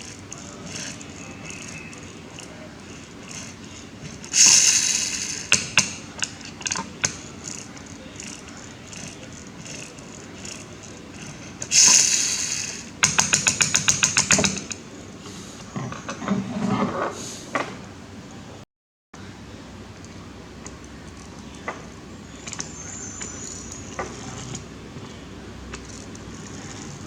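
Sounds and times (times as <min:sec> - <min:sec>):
short hissing bursts: 0:00.0 - 0:10.8, 0:11.6 - 0:14.4
run of sharp clicks: 0:00.0 - 0:16.2.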